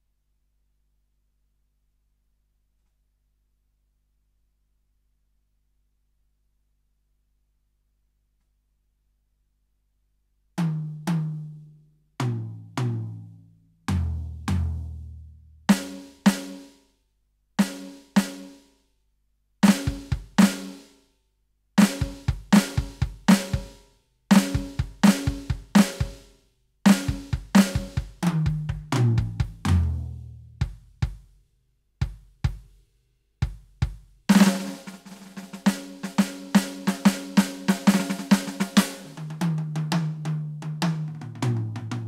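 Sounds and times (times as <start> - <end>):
electronic drum beat with hi-hat: 19.6 - 20.9, 21.8 - 26.3, 26.9 - 31.4, 32.0 - 32.8, 33.4 - 42.0.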